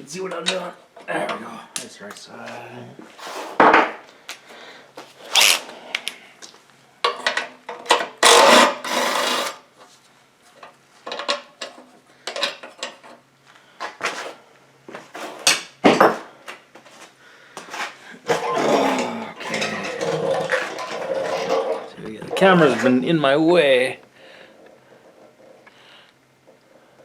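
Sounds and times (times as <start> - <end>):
metal parts clinking and rattling: 18.3 - 22.6.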